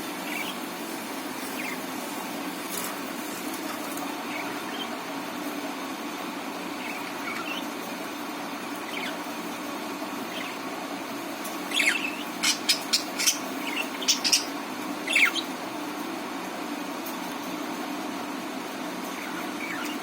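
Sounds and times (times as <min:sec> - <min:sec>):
low background hum: 0:00.0 - 0:20.0
budgerigars chirping: 0:00.2 - 0:00.6, 0:01.4 - 0:01.9, 0:04.3 - 0:05.0, 0:06.7 - 0:07.7, 0:08.7 - 0:09.4, 0:10.2 - 0:10.8, 0:11.6 - 0:15.6, 0:19.1 - 0:20.0.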